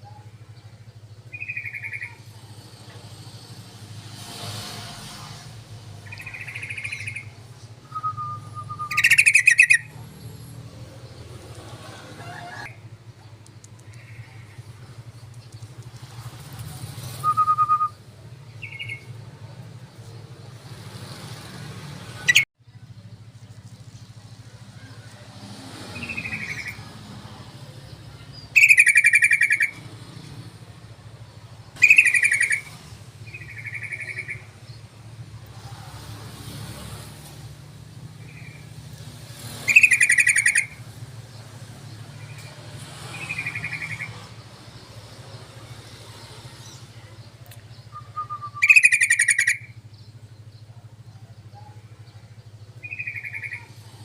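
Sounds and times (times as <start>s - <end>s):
bird song bursts: 0.0s - 2.8s, 6.0s - 11.7s, 12.7s - 22.5s, 25.7s - 26.9s, 27.6s - 35.2s, 37.0s - 54.0s.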